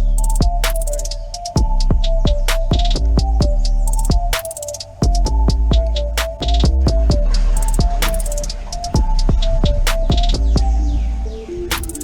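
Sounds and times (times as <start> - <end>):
deep bass: 0.0 - 12.0
falling synth sweep: 0.0 - 12.0
synth melody: 0.0 - 12.0
drum hits: 6.6 - 8.3.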